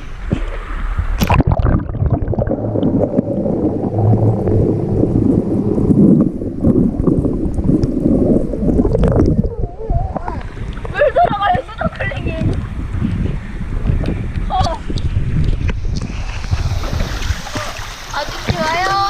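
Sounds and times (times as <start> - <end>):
stream water splashing and gurgling: 0.0 - 9.5, 15.8 - 19.0
sharp water splash: 0.6 - 7.8, 16.0 - 19.0.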